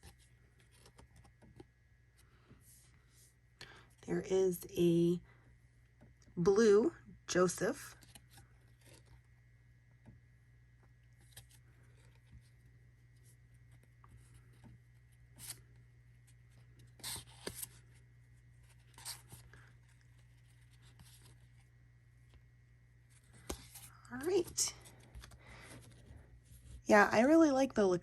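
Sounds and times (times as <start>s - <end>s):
cardboard cards being flipped: 0.0s - 2.3s, 7.9s - 9.3s, 11.0s - 22.4s, 23.1s - 26.8s
low steady hum: 0.0s - 28.0s.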